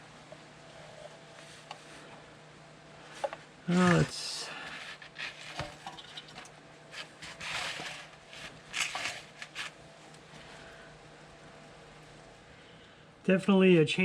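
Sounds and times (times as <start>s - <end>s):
clicks scrapes and rustles of handling: 3.2s - 9.8s.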